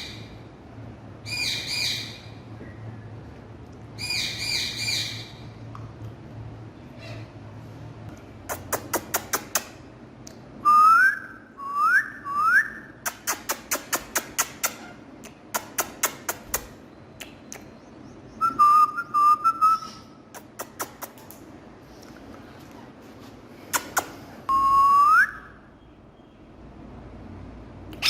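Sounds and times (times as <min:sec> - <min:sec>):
parrot whistling: 0:18.4 - 0:20.1.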